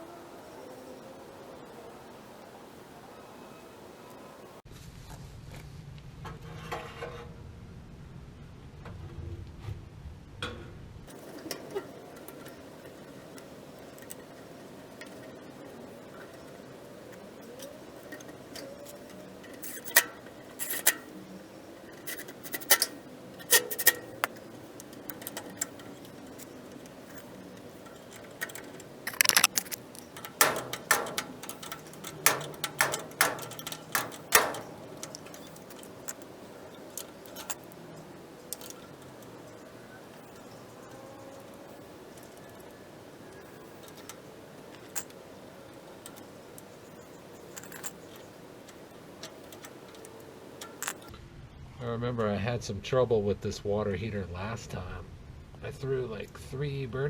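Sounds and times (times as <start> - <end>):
metallic tool clicks and knocks: 11.1 - 21.2, 21.8 - 51.1.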